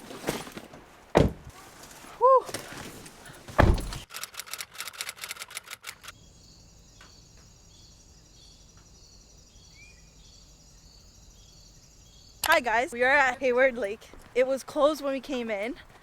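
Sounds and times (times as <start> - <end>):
loud thump: 1.2 - 1.5, 3.6 - 4.0
bird chirp: 6.1 - 12.9.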